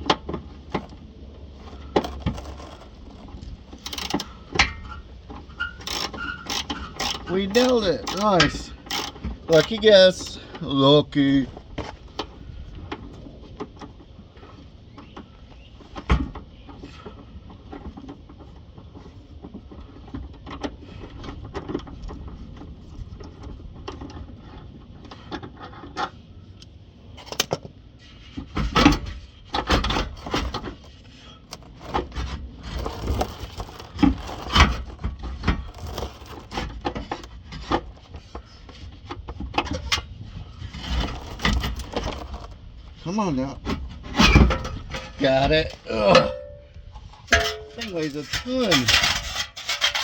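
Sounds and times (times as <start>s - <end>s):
metal exhaust clanking and scraping: 1.5s - 10.5s, 28.0s - 38.7s, 39.4s - 42.7s, 43.6s - 50.0s.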